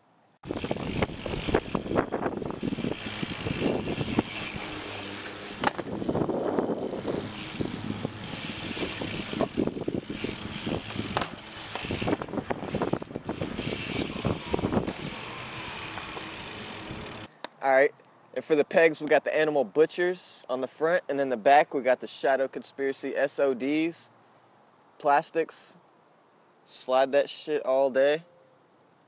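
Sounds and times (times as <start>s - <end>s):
bike hub ratcheting: 0.4s - 6.1s, 6.9s - 17.3s
tyre noise: 0.4s - 17.3s
bike clattering knocks: 5.3s - 6.0s, 10.7s - 13.6s.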